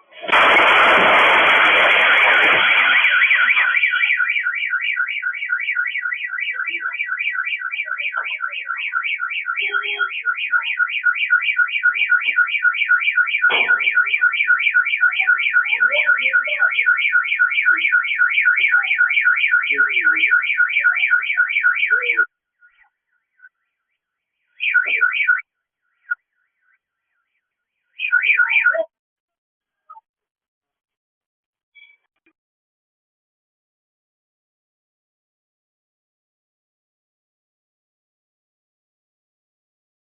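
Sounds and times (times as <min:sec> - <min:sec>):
gas cylinder explosion: 0:00.2 - 0:03.8
car alarm warbling: 0:00.3 - 0:28.9.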